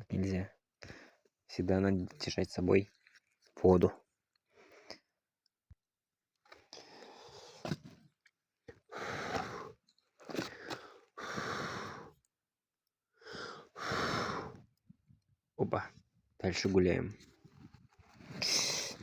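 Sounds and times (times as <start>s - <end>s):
person blowing out hard: 13.8s - 14.6s.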